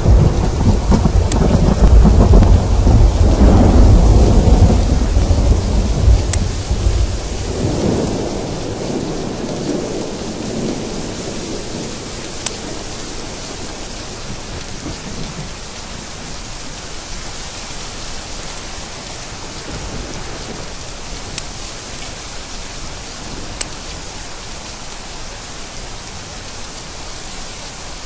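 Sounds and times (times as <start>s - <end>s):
thunder rolling: 0.0s - 16.3s
heavy rain: 0.0s - 28.0s
sharp ticks: 1.2s - 2.0s, 6.2s - 6.6s.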